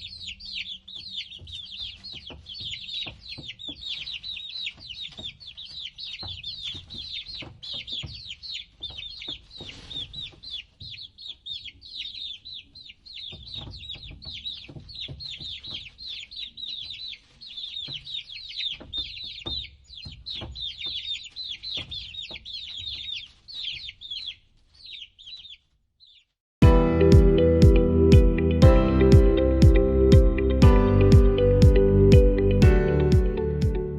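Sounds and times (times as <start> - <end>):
baby chicks peeping: 0.0 - 26.4, 27.0 - 33.9
soft low thumps and clicks: 26.6 - 33.9.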